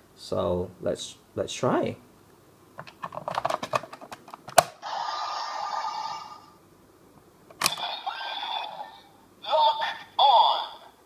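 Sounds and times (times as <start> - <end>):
sharp plastic snap: 2.8 - 4.8
toy electronic sound effect: 4.8 - 6.6, 7.6 - 10.9.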